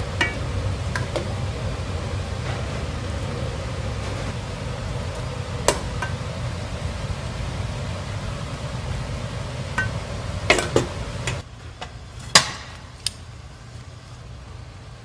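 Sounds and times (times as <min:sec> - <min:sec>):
utensils clinking against dishes: 0:00.0 - 0:01.4, 0:09.8 - 0:11.4
low background hum: 0:00.0 - 0:15.0.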